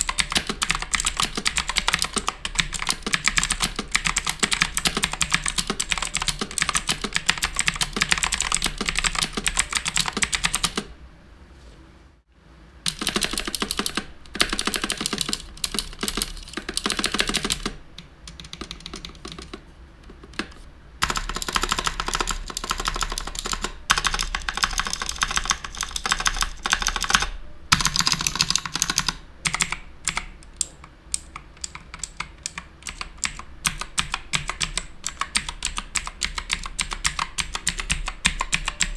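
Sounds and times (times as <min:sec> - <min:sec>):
clicky mechanical keyboard typing: 0:00.0 - 0:10.9, 0:12.9 - 0:38.9.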